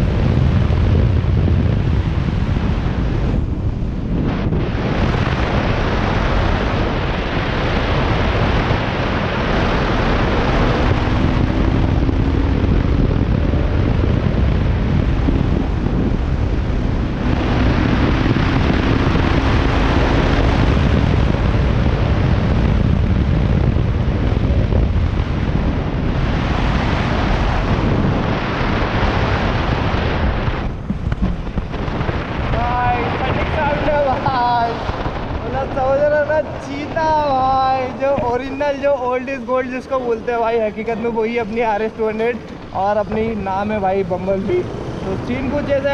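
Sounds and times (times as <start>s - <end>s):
wind buffeting microphone: 0.0s - 45.9s
motorcycle engine revving through gears: 8.0s - 32.1s, 42.4s - 45.9s.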